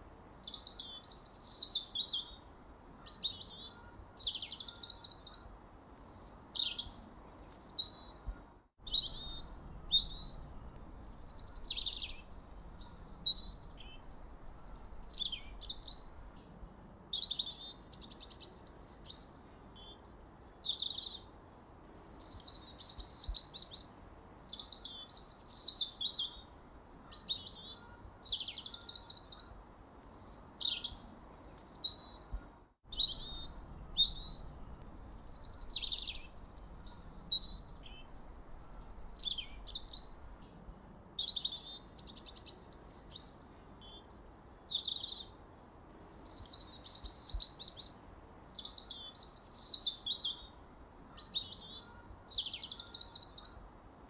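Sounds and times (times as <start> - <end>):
faint background hiss: 0.0 - 54.0
songbirds chirping and singing: 32.9 - 40.4.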